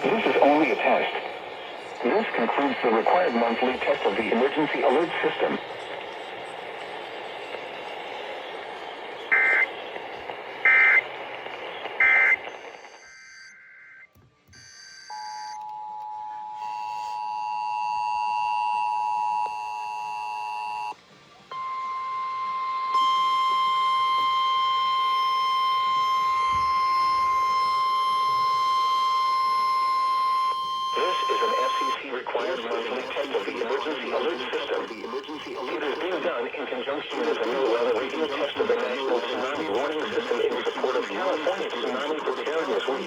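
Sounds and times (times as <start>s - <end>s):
broadcast static hiss: 0.0s - 12.9s, 25.8s - 43.0s
chirping data bursts: 9.2s - 9.8s, 10.6s - 11.1s, 11.7s - 14.0s
short beeps: 9.3s - 9.7s, 12.0s - 14.0s, 21.5s - 32.0s
two-tone attention signal: 9.3s - 9.7s, 12.0s - 12.4s, 14.6s - 32.0s.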